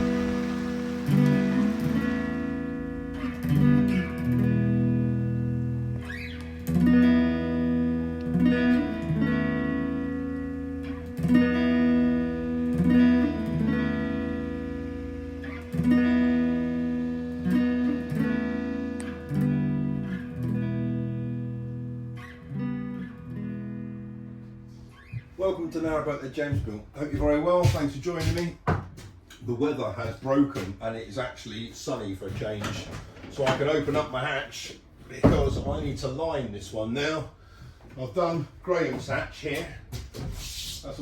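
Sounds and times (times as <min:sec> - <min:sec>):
guitar chords strummed: 0:00.0 - 0:25.4.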